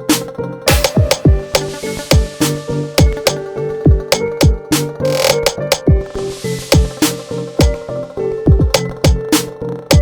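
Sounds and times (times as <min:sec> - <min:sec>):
deep bass drums: 0:00.7 - 0:04.7, 0:06.7 - 0:07.0, 0:08.5 - 0:09.3
sharp percussion hits: 0:00.7 - 0:06.0
held synth notes: 0:00.9 - 0:04.6.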